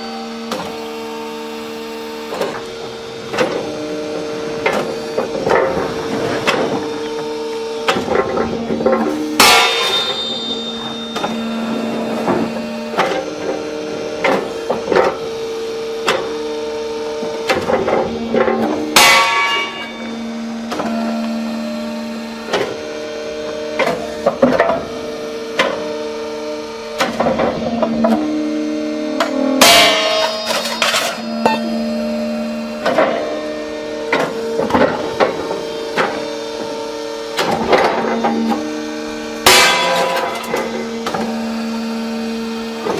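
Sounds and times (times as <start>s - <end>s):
hydraulic press whining: 0.0s - 42.9s.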